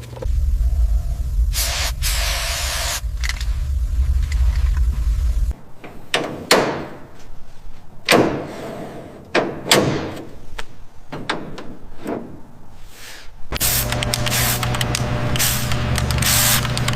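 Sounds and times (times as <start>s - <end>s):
steady hiss: 0.0s - 5.5s.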